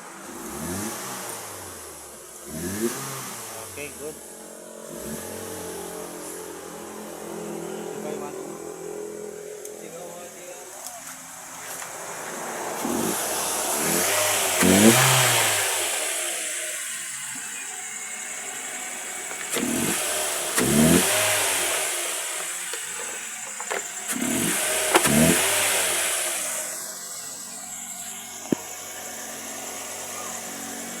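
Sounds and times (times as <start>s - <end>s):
car engine revving: 0.0s - 10.6s, 11.3s - 31.0s.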